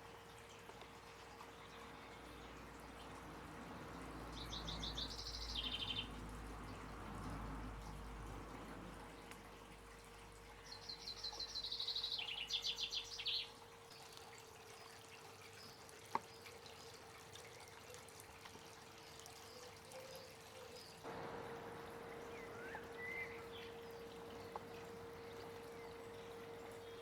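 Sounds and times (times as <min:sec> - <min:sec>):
trickling water: 0:00.0 - 0:27.0
faint steady hum: 0:19.6 - 0:27.0
bird trilling: 0:22.0 - 0:27.0.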